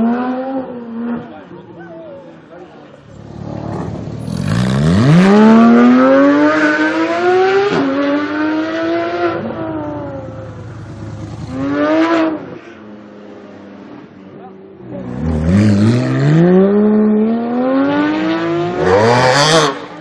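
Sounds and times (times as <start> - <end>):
sports car engine accelerating: 3.0 - 12.5, 14.9 - 20.0.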